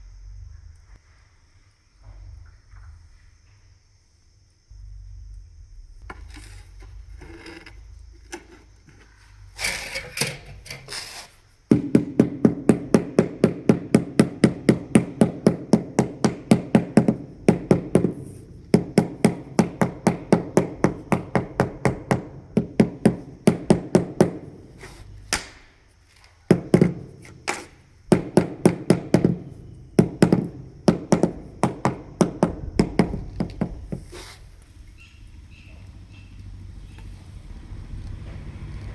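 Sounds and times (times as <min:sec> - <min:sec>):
mallet tapping floor tile: 0:11.7 - 0:25.7, 0:26.5 - 0:34.2.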